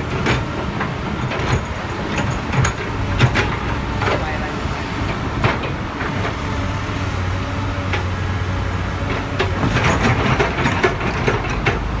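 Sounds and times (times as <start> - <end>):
diesel machinery engine hum: 0.0 - 12.0
metallic knocks and clatter: 9.2 - 11.9.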